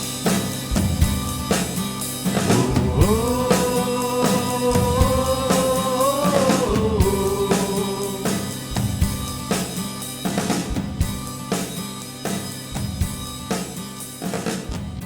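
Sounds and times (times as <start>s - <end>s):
drum kit beat: 0.0s - 15.0s
person singing long note: 2.5s - 8.5s.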